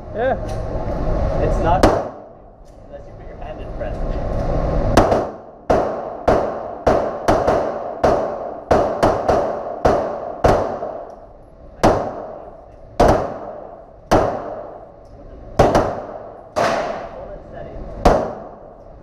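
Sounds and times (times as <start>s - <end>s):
pistol shots with echo: 1.8s - 2.3s, 5.0s - 11.1s, 11.8s - 14.9s, 15.6s - 17.2s, 18.0s - 18.8s.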